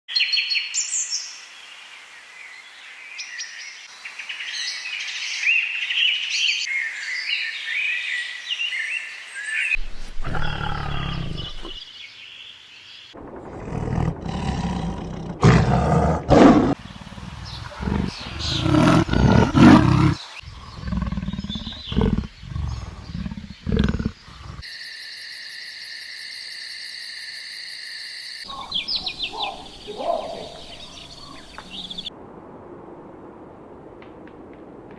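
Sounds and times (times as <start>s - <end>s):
large animal roaring: 10.0s - 11.8s, 13.4s - 24.6s
high bird chirping: 17.4s - 24.6s, 28.5s - 32.1s.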